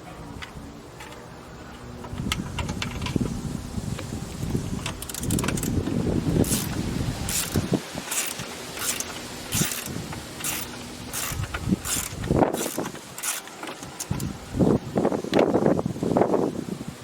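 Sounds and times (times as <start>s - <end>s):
ratchet wrench rasps: 4.7s - 5.8s, 6.4s - 14.4s
ratchet wrench clicking: 4.8s - 5.8s, 6.4s - 14.4s.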